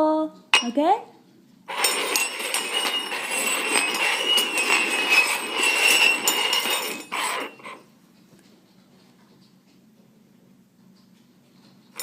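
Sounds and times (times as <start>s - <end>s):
cups scraping on hard surface: 1.7s - 8.5s.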